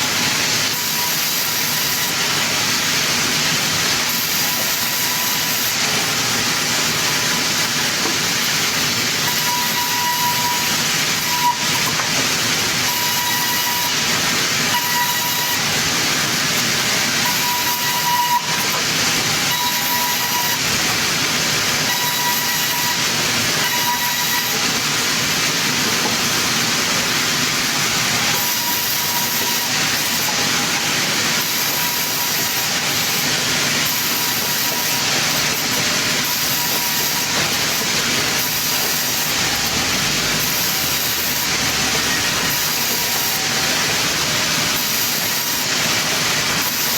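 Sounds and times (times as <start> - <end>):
circular saw cutting timber: 0.0 - 46.9
saw whine: 0.0 - 46.9.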